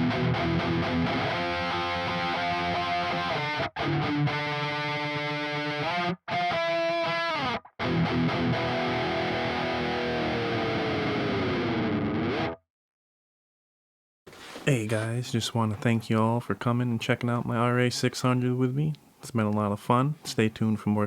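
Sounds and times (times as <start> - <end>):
distorted electric guitar: 0.0 - 12.6.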